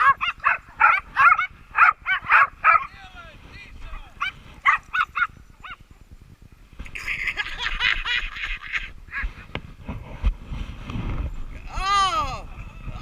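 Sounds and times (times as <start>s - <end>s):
small dog yapping and snarling: 4.2s - 5.8s.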